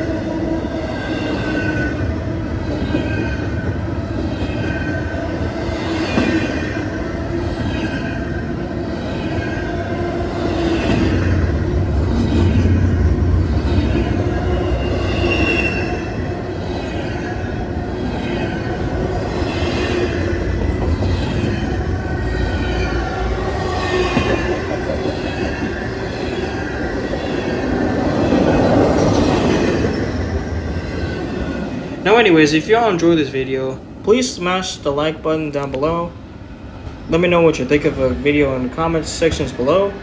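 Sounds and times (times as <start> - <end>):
train wheels rumbling on rail: 0.0 - 40.0
high wheel squeal: 13.8 - 31.8.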